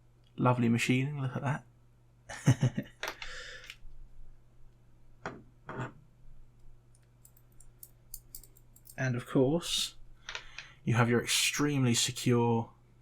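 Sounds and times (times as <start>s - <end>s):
metal knife parts clicking: 7.2s - 9.0s.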